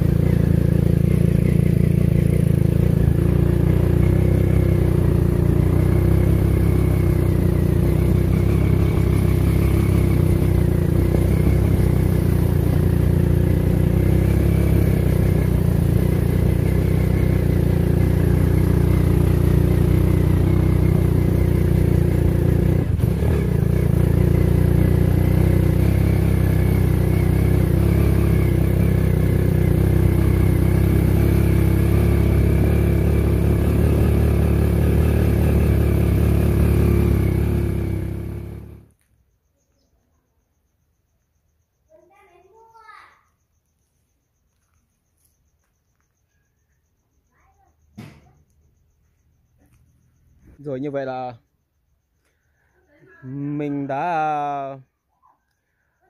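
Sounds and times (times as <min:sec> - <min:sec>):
motorcycle engine running: 0:00.0 - 0:39.0, 0:44.4 - 0:51.4, 0:52.0 - 0:54.9
knock: 0:48.0 - 0:48.3.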